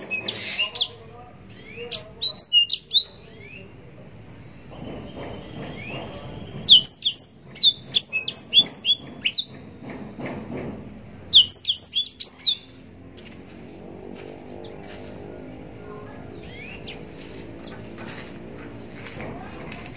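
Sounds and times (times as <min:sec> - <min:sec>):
canary singing: 0:00.0 - 0:03.9, 0:04.5 - 0:09.8, 0:11.2 - 0:13.0, 0:15.8 - 0:18.0.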